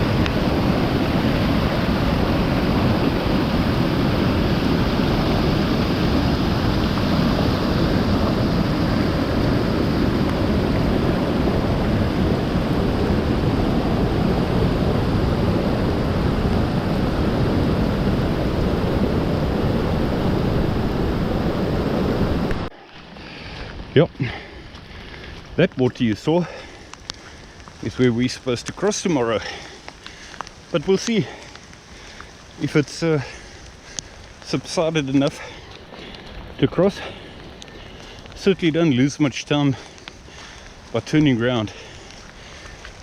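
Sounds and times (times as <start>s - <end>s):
rushing mountain stream: 0.0s - 22.7s, 23.5s - 43.0s.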